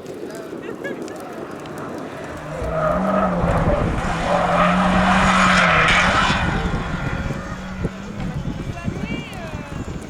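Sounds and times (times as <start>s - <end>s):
race car passing at speed: 2.0s - 9.1s.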